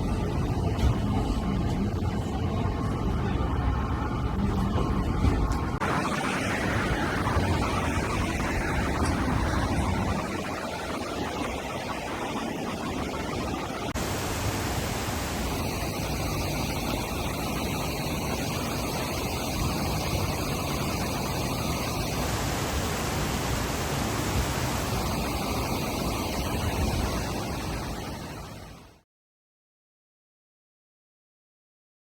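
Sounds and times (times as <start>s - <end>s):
river water rushing: 14.0s - 18.0s, 19.9s - 26.7s.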